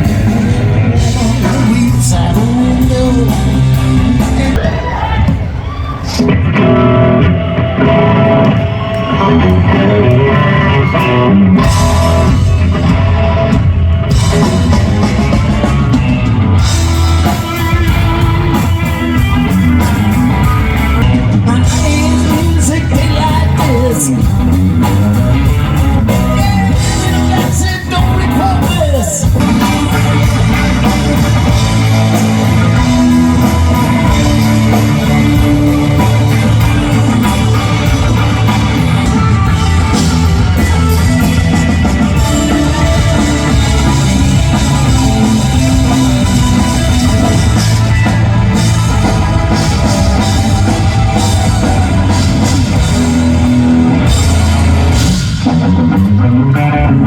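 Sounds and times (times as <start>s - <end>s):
person singing: 0.0s - 5.1s, 21.3s - 24.7s, 25.9s - 31.4s
drum kit: 0.0s - 57.0s
electric guitar: 0.0s - 57.0s.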